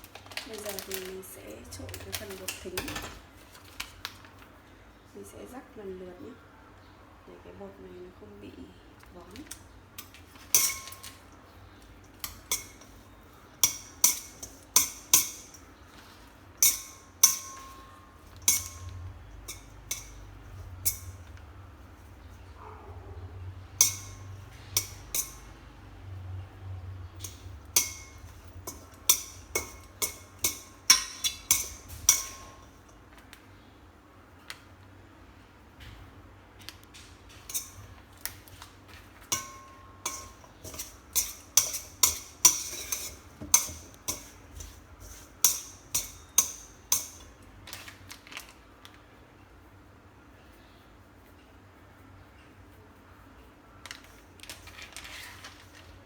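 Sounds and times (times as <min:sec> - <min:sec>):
utensils clinking against bowl: 0:00.1 - 0:03.8, 0:09.2 - 0:22.8, 0:23.7 - 0:33.3, 0:36.6 - 0:48.6.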